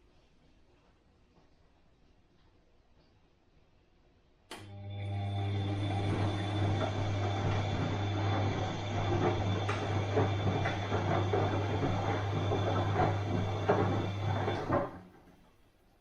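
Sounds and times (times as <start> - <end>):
washing machine running: 4.5 - 15.6.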